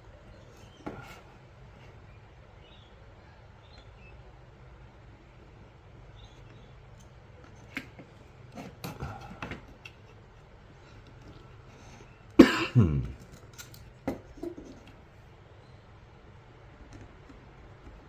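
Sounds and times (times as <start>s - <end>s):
person coughing: 12.4s - 13.2s
small tools clicking and tapping: 13.1s - 15.0s.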